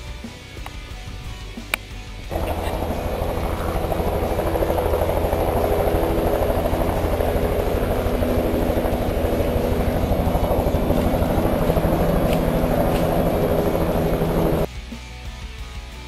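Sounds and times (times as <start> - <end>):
helicopter rotor beating: 2.3 - 14.7
low engine hum: 2.3 - 14.7.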